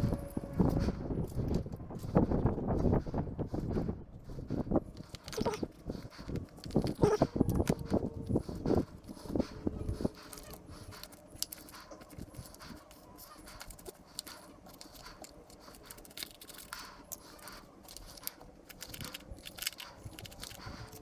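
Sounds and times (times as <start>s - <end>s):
hands planting seeds in soil: 4.3s - 21.0s.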